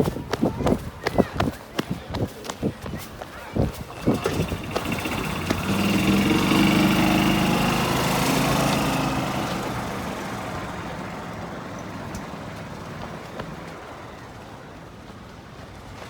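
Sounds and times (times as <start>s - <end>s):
small train engine running: 3.6s - 14.6s.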